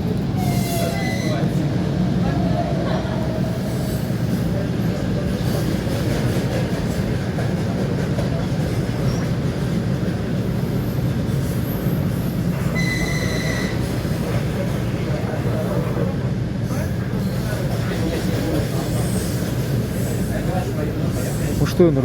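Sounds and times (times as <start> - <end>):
train wheels rumbling on rails: 0.0 - 22.0
wheels squealing on rail: 0.3 - 1.8, 8.8 - 21.7.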